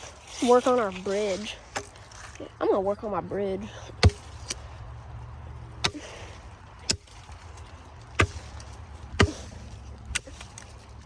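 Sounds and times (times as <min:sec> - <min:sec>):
machete chopping wood: 0:01.7 - 0:02.0, 0:04.0 - 0:04.6, 0:05.8 - 0:10.7.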